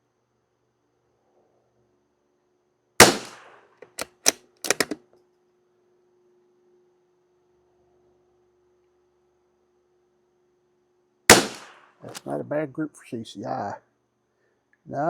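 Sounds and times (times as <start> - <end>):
rifle shot: 3.0 - 5.0, 11.3 - 12.2
rifle bolt metallic clicks: 3.8 - 5.0.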